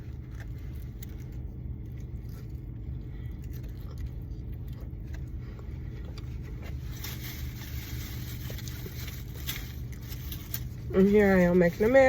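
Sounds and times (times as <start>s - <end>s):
steady low hum: 0.0s - 12.0s
takeout packaging being handled: 6.3s - 12.0s.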